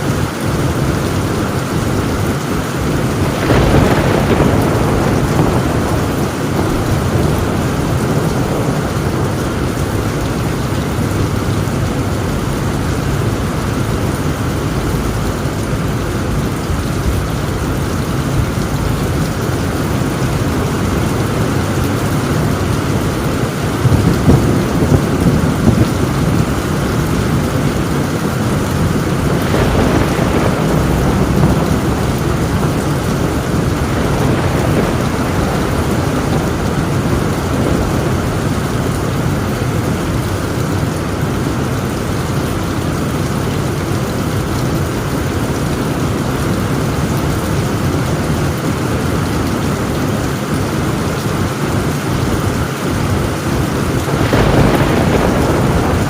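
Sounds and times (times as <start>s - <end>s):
heavy rain on a tin roof: 0.0s - 56.0s
low thunder rumble: 0.0s - 56.0s
sharp thunder cracks: 2.8s - 40.6s, 54.0s - 56.0s.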